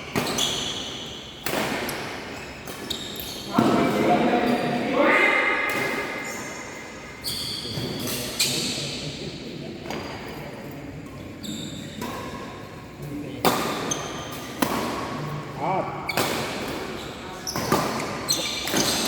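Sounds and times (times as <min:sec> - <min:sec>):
shoes squeaking on court floor: 0:00.0 - 0:04.9, 0:05.8 - 0:08.8, 0:11.1 - 0:12.1, 0:13.7 - 0:14.5, 0:16.1 - 0:19.0.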